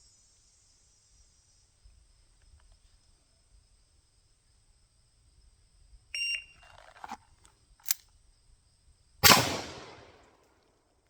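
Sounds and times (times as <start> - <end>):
shot timer beep: 6.2 - 6.6
clicks and rustles of revolver drawn: 6.6 - 8.2
loud revolver shot: 9.2 - 10.4.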